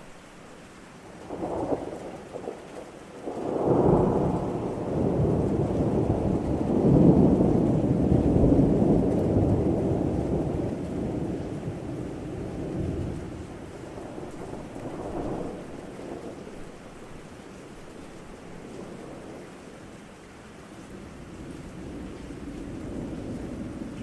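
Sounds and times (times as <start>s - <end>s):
rain falling: 0.0s - 24.0s
thunder rumbling: 1.3s - 19.7s.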